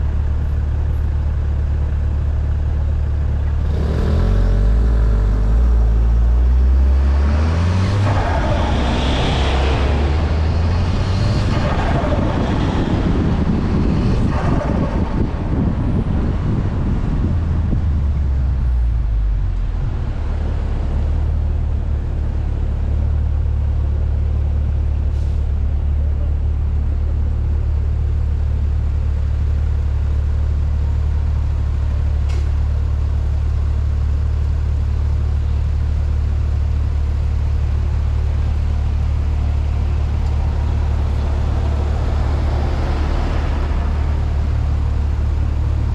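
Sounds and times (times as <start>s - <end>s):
car engine running: 0.0s - 45.9s.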